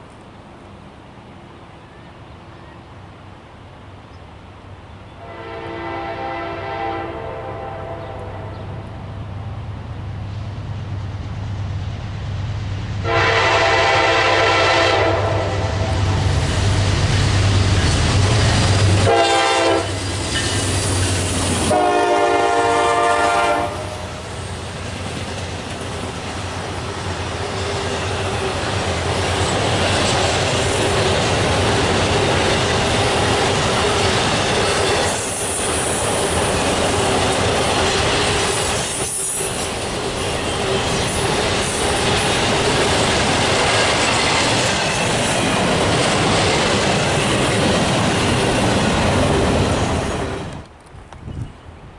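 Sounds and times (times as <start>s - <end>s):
locomotive air horn blasts: 5.2s - 8.6s, 13.0s - 16.1s, 19.0s - 20.0s, 21.6s - 24.2s
locomotive engine drone: 7.5s - 50.9s
train wheels clattering: 16.1s - 23.0s, 24.1s - 50.8s.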